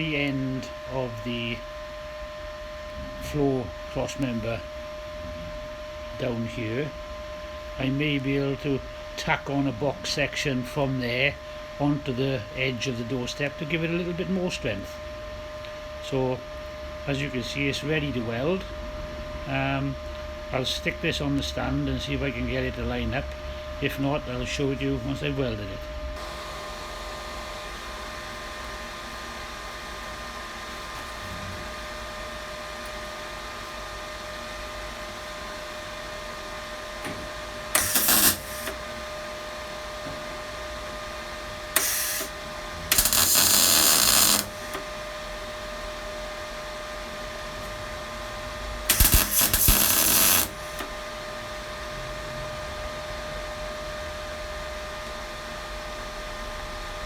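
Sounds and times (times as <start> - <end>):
steady hum: 0.0 - 52.6
welder crackling: 37.0 - 40.0, 41.0 - 45.2, 48.9 - 51.1.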